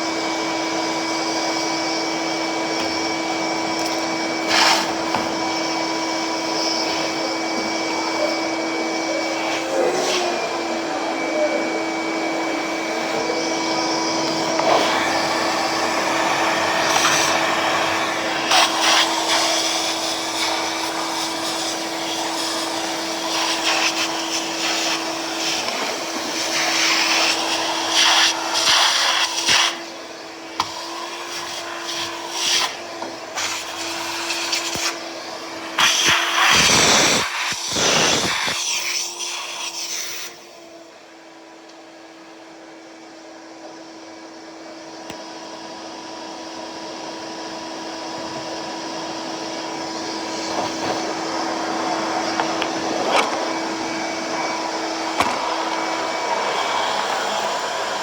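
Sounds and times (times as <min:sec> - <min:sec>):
small motor humming: 0:35.8 - 0:38.9.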